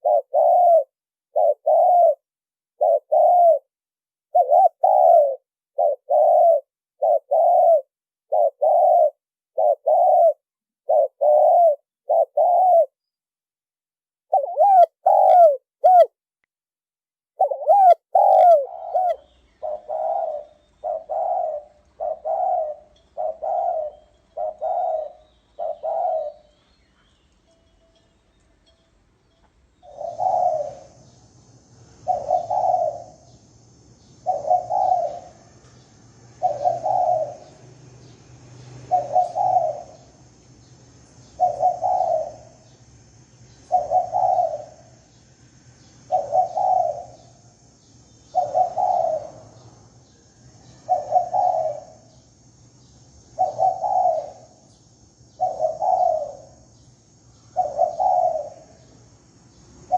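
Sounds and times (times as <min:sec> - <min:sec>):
dove cooing: 0:00.0 - 0:03.7, 0:04.3 - 0:13.0, 0:14.3 - 0:16.2, 0:17.4 - 0:27.2, 0:29.8 - 0:31.1, 0:32.0 - 0:33.4, 0:34.2 - 0:35.6, 0:36.3 - 0:37.6, 0:38.8 - 0:40.2, 0:41.3 - 0:42.7, 0:43.7 - 0:45.0, 0:46.1 - 0:47.5, 0:48.3 - 0:49.5, 0:50.7 - 0:52.2, 0:53.3 - 0:54.7, 0:55.3 - 0:56.7, 0:57.5 - 0:58.9.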